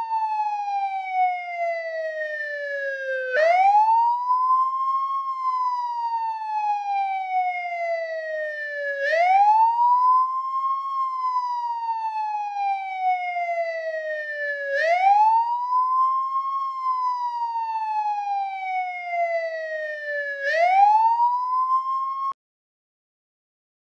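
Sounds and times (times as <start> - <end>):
police siren wailing: 0.0 - 22.4.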